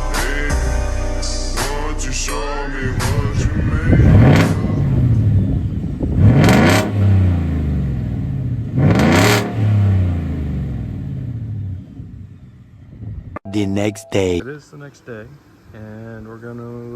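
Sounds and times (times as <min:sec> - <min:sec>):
vee eight engine idling and revving: 0:02.8 - 0:12.7.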